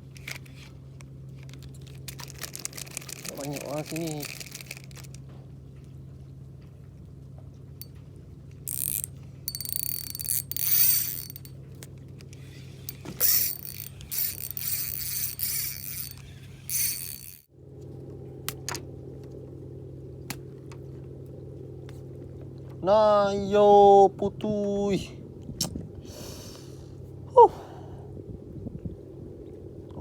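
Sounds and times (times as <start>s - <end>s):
steady low hum: 0.0s - 30.0s
fishing reel ratcheting: 1.4s - 5.2s, 8.7s - 11.5s, 12.2s - 17.5s.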